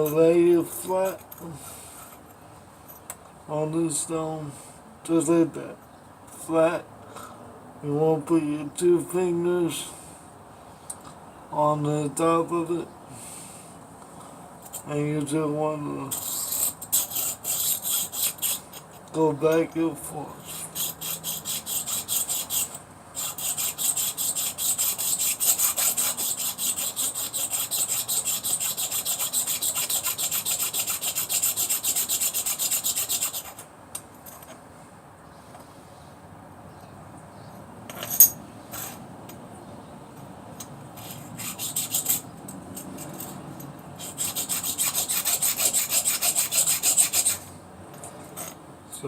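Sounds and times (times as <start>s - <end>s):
blade scraping on sharpening stone: 16.1s - 19.0s, 20.4s - 33.6s, 41.0s - 42.2s, 44.0s - 47.4s.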